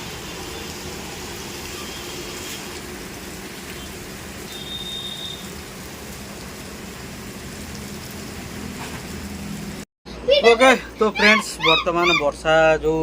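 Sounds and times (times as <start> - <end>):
steady rain hiss: 0.0 - 9.8.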